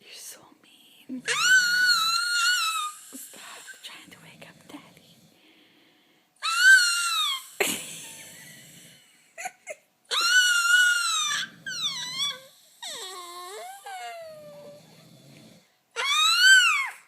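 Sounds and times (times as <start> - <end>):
man snoring with whistling wheezes: 11.0 - 15.7.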